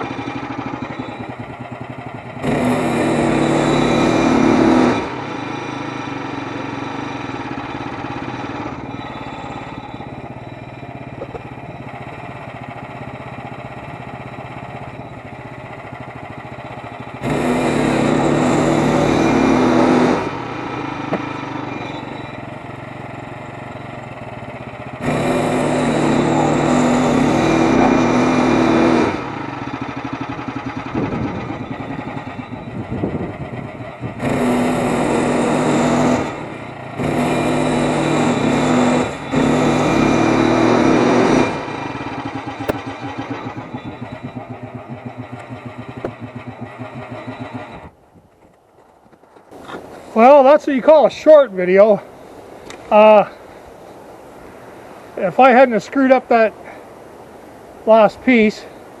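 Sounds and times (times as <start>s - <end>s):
sawmill gasoline engine running: 0.0s - 54.2s
saw cutting through log: 2.4s - 7.6s, 17.2s - 22.3s, 25.0s - 29.3s, 34.2s - 48.0s.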